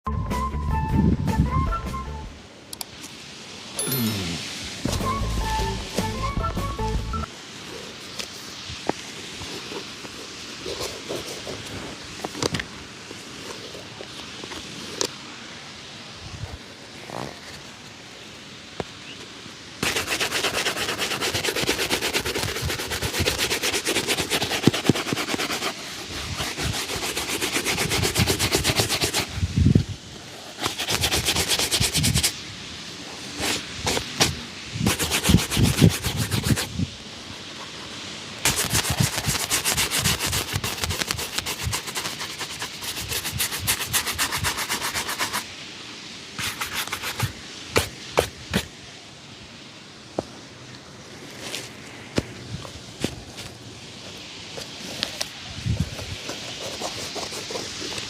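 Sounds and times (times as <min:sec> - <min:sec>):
brush scrubbing a shoe: 0:09.2 - 0:12.3, 0:19.8 - 0:29.5, 0:30.2 - 0:32.4, 0:33.1 - 0:45.5, 0:46.4 - 0:48.7, 0:54.6 - 0:58.0.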